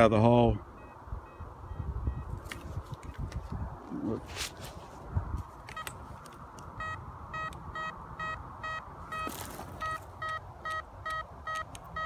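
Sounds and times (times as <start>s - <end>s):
metal detector beeping: 0.8s - 3.4s, 5.7s - 6.0s, 6.8s - 12.0s.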